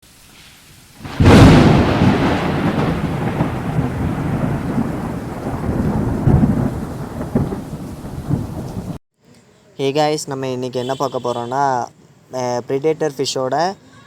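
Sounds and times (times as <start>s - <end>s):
steady hiss: 0.0s - 1.6s
loud crack: 1.0s - 8.9s.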